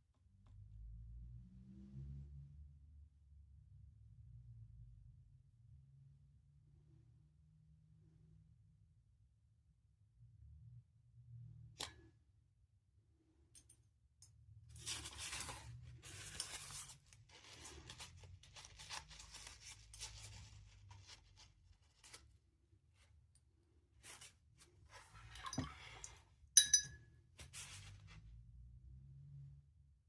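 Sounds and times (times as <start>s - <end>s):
sharp ringing clink: 26.6s - 27.0s.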